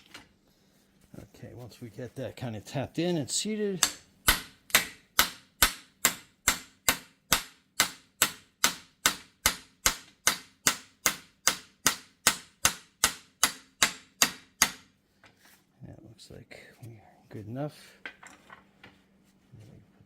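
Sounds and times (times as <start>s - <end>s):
hammer tapping metal: 3.8s - 14.9s.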